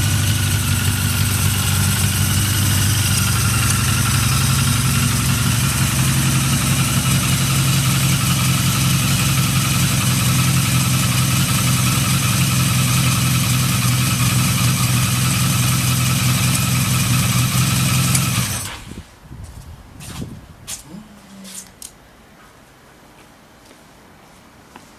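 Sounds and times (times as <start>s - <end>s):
motorcycle engine idling: 0.0s - 19.0s.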